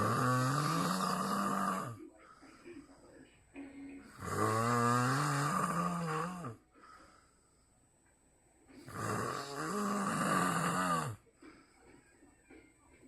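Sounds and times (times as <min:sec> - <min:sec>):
man snoring heavily: 0:00.0 - 0:02.0, 0:04.1 - 0:06.6, 0:08.9 - 0:11.2.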